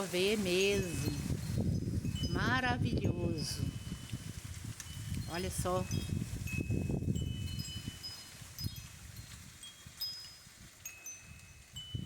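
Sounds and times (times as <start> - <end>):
faint low wind rumble: 0.0 - 12.0
wind chime ringing softly: 4.9 - 12.0.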